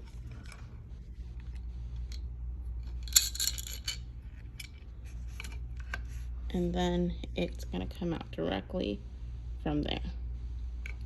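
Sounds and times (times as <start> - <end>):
low hum: 0.0 - 11.0
metallic rattle and scrape: 2.8 - 6.2.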